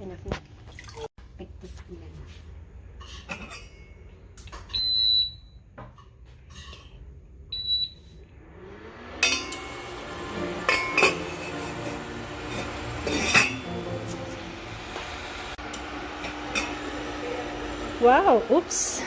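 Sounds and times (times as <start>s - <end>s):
electronic appliance beeps: 4.6s - 5.8s, 7.5s - 12.9s
cookware clattering and knocking: 10.7s - 11.7s.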